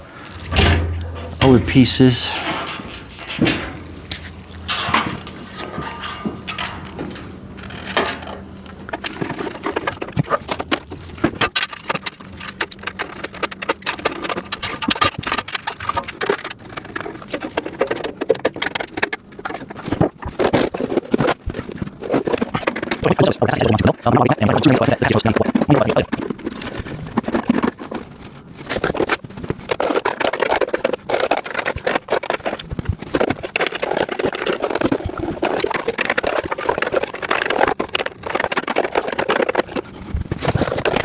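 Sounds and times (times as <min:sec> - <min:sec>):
plastic clicking and clattering: 0:02.9 - 0:23.1.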